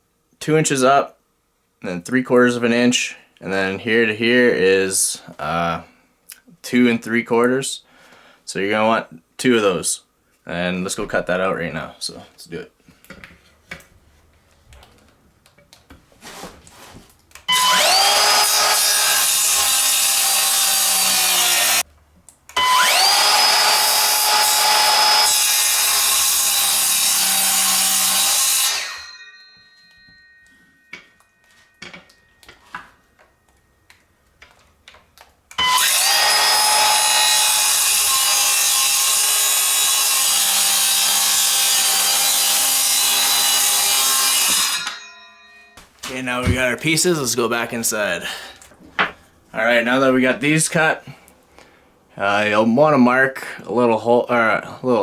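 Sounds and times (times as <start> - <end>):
circular saw cutting wood: 17.5 - 21.8, 22.6 - 29.2, 35.6 - 45.0.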